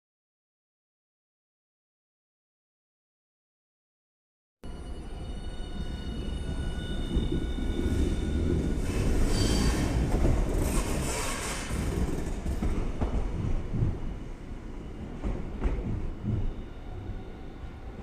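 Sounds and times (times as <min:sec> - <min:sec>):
tram wheels rumbling on rail: 0:04.9 - 0:18.0.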